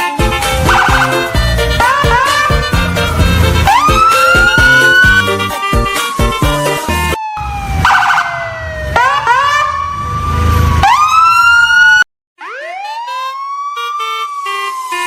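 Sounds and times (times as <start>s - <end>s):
siren wailing: 0.0s - 15.0s
low rumble: 0.3s - 5.3s.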